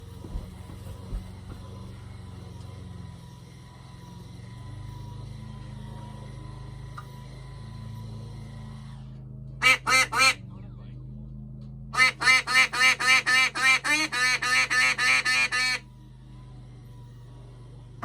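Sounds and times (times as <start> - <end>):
steady low hum: 0.0 - 18.0
duck quacking: 9.6 - 10.4, 12.0 - 15.8.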